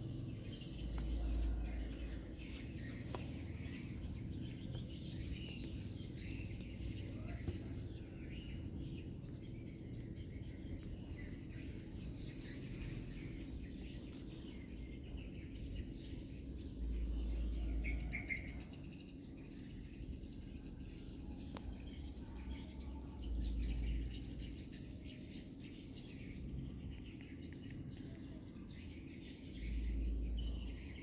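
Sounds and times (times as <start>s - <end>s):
birds chirping: 0.0s - 31.0s
insects chirping: 0.0s - 31.0s.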